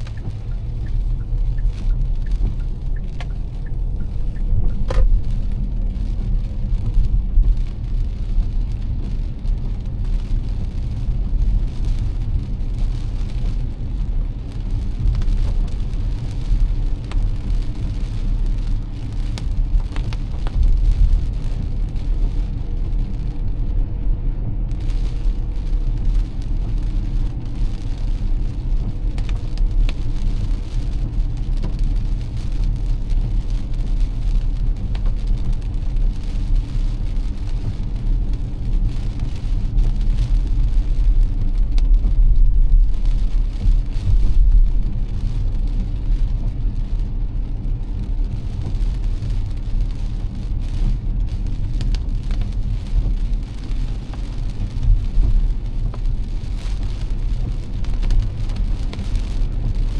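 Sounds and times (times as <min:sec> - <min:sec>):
raindrops tapping: 0:00.0 - 0:46.6
car road rumble: 0:00.0 - 0:59.9
rain and wet road hiss: 0:00.0 - 0:59.9.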